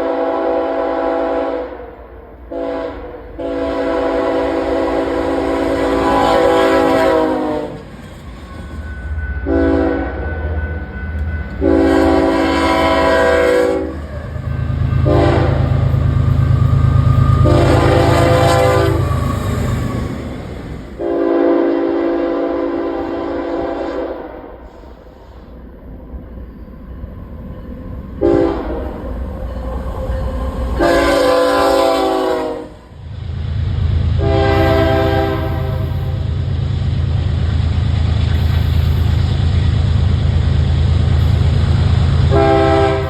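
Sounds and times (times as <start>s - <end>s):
locomotive air horn blasts: 0.0s - 7.8s, 9.0s - 19.4s, 21.0s - 25.0s, 28.2s - 29.1s, 30.8s - 32.9s, 34.2s - 36.4s, 42.1s - 43.0s
train rumbling past: 0.0s - 43.0s.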